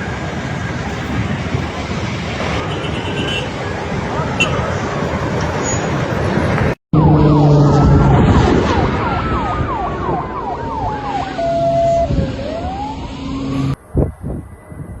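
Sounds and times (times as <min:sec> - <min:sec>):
siren yelping: 0:00.0 - 0:05.6, 0:07.0 - 0:13.8
siren wailing: 0:00.0 - 0:15.0
steady low siren tone: 0:07.0 - 0:15.0.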